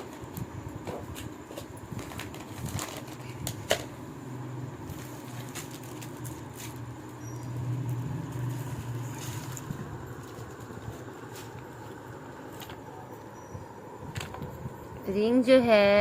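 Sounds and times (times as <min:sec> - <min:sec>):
low steady hum: 0:00.0 - 0:16.0
gift packaging rustling: 0:01.2 - 0:03.9, 0:04.8 - 0:07.1, 0:08.6 - 0:12.8.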